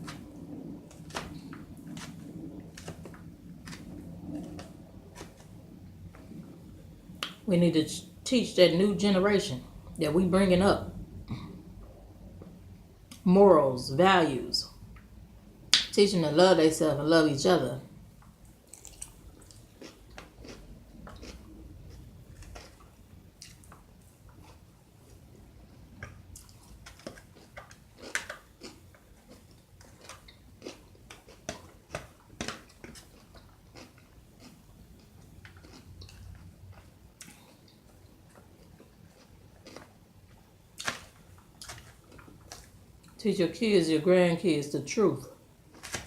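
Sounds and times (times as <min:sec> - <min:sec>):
person chewing crunchy food: 0:18.4 - 0:43.2.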